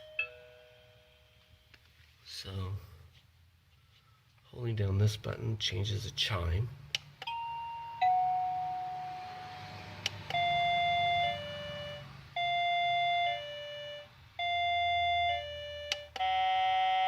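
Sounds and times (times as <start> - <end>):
electronic doorbell chime: 0.0 - 1.4, 7.2 - 17.0.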